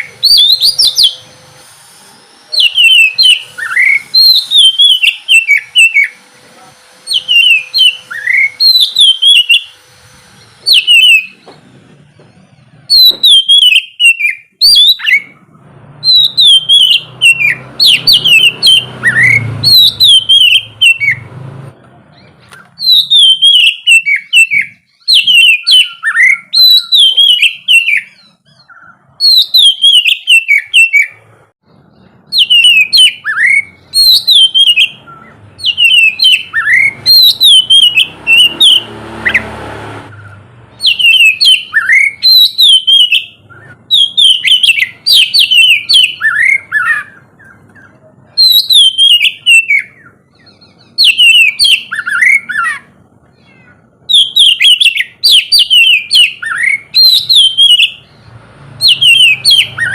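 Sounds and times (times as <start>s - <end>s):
bird singing whistles and chirps: 0.0s - 1.4s, 2.4s - 6.2s, 7.0s - 11.6s, 12.6s - 15.4s, 16.0s - 21.3s, 22.1s - 59.9s
noise swell: 0.0s - 4.3s.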